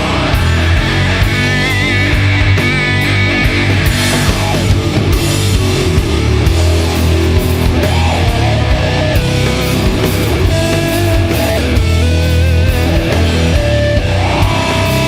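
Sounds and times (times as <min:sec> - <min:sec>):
distorted electric guitars and bass: 0:00.0 - 0:15.0
drums and cymbal hits: 0:00.0 - 0:15.0.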